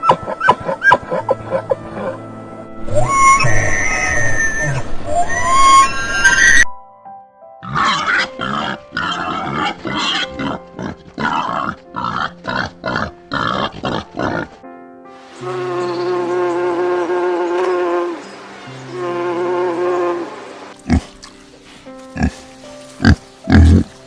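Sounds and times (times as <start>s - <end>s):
held musical tone: 0.2s - 6.4s
animal grunting: 7.6s - 14.6s, 18.9s - 24.0s.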